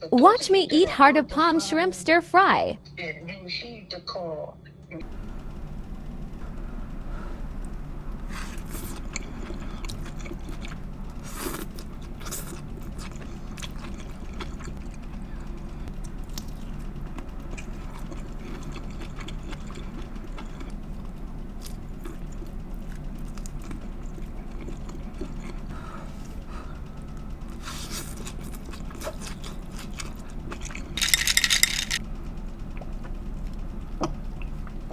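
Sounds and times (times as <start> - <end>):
steady low hum: 4.7 - 34.9
person chewing food: 7.4 - 32.0.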